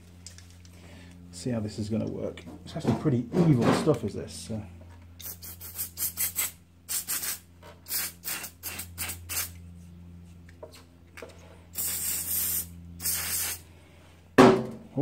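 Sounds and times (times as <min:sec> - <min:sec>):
aerosol spray hiss: 0:05.2 - 0:09.5, 0:11.8 - 0:13.6.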